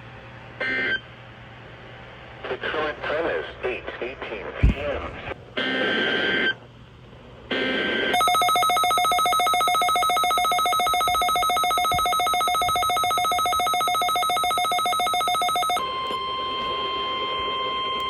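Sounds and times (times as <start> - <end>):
pulsing electronic alert tone: 8.2 - 16.4
steady single-pitch alert tone: 8.2 - 18.0.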